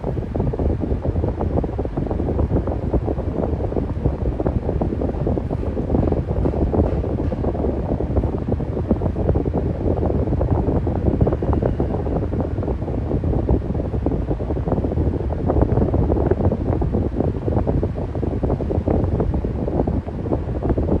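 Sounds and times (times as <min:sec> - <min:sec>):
electric fan running: 0:00.0 - 0:21.0
wind buffeting microphone: 0:00.0 - 0:21.0.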